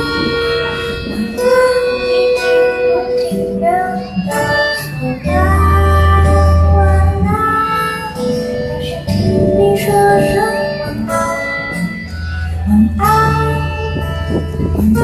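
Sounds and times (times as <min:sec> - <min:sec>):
high voice singing: 0:00.0 - 0:15.0
instrumental accompaniment: 0:00.0 - 0:15.0
deep bass note: 0:05.3 - 0:08.3.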